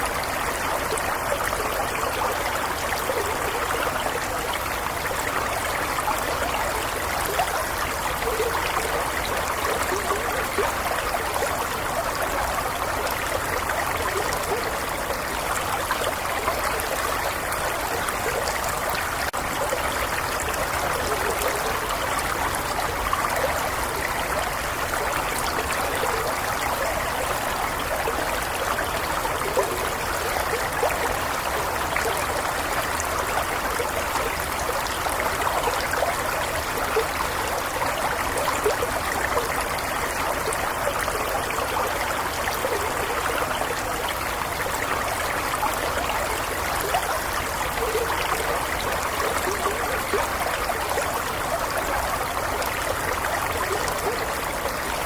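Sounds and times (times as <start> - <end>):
stream trickling over stones: 0.0 - 55.0.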